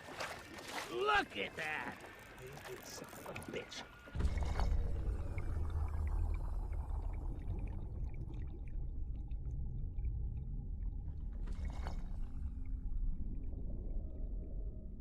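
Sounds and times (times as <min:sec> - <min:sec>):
faint bubbling and ticking: 0:00.0 - 0:15.0
deep earthquake rumble: 0:04.1 - 0:15.0.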